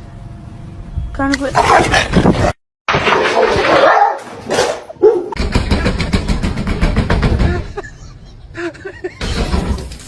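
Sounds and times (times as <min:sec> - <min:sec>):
dog barking: 0:03.8 - 0:05.4.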